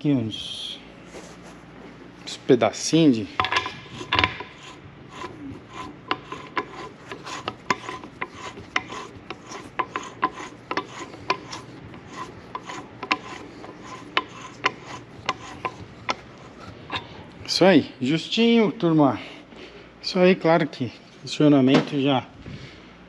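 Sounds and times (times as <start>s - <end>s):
metal parts scraping and rubbing: 3.1s - 17.6s.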